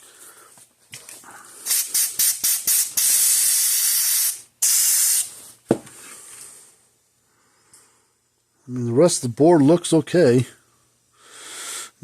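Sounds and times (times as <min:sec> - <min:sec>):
aerosol spray squirting: 0:01.6 - 0:05.3
thump: 0:05.7 - 0:05.9.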